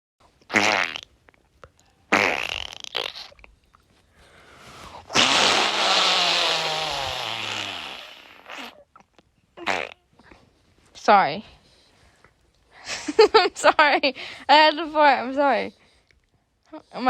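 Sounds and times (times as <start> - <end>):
farts: 0.5 - 1.1, 2.1 - 3.5, 5.1 - 8.9, 9.6 - 10.1.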